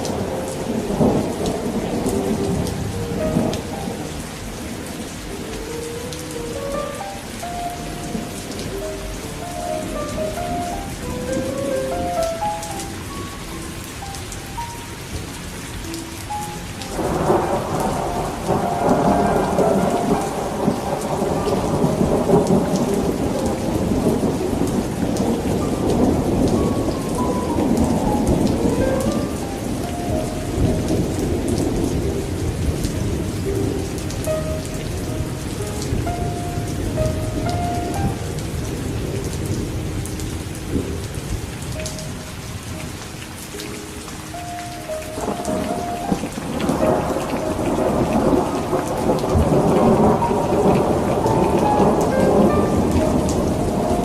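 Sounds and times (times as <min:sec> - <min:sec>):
rolling thunder: 0:00.0 - 0:05.3, 0:16.8 - 0:42.9, 0:44.9 - 0:54.0
steady rain: 0:00.0 - 0:54.0.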